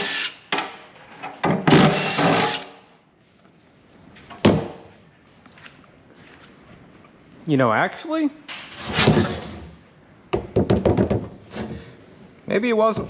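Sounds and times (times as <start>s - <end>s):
cordless drill running: 0.0s - 0.4s, 1.7s - 2.7s.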